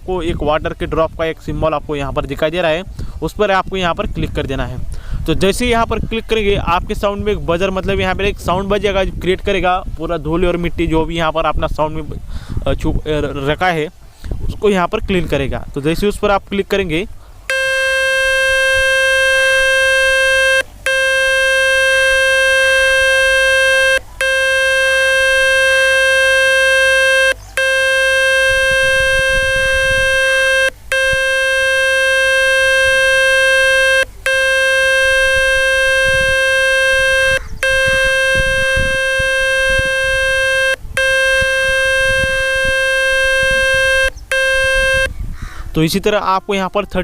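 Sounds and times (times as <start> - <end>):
buzzing tone from phone speaker: 17.5 - 45.1.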